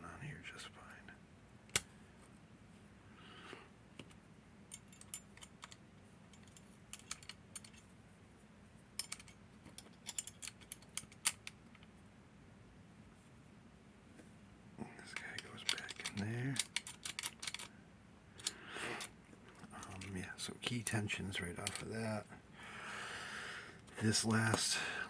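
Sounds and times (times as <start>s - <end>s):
padlock parts clicking and clinking: 4.0s - 7.9s, 9.0s - 11.9s, 15.2s - 17.8s, 18.4s - 22.0s, 24.3s - 24.8s.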